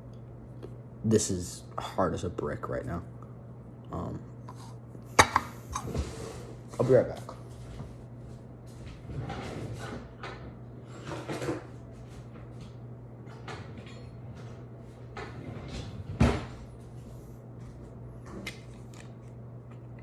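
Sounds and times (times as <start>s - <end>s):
steady low hum: 0.0s - 20.0s
cupboards and drawers opening and shutting: 5.2s - 6.6s, 8.7s - 11.8s, 13.3s - 16.8s.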